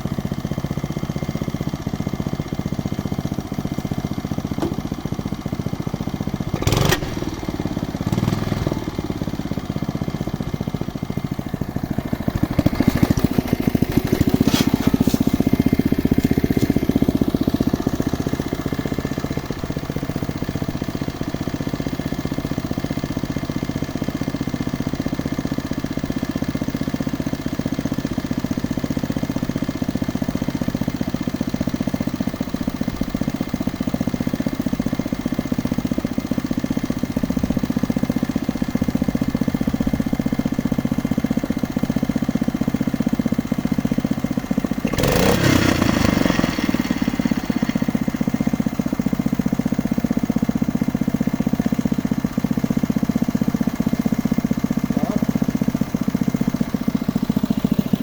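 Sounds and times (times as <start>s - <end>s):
drilling rig engine running: 4.4s - 22.6s, 44.6s - 49.6s.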